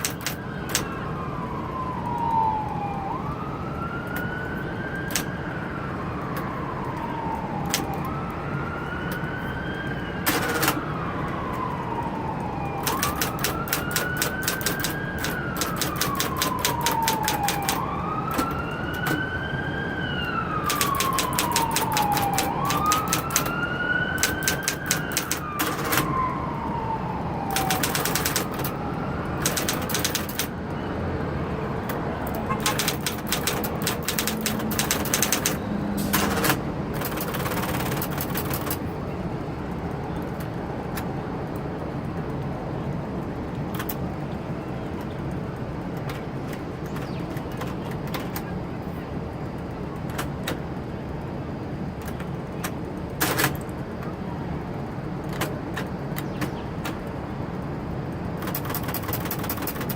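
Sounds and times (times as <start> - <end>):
electric typewriter typing: 0.0 - 0.9, 5.1 - 5.3, 10.2 - 10.8, 12.8 - 19.2, 20.6 - 26.1, 27.5 - 28.8, 29.4 - 30.6, 31.8 - 38.9, 43.7 - 44.0, 52.0 - 53.7, 55.2 - 57.1, 58.3 - 59.9
siren wailing: 0.0 - 43.4.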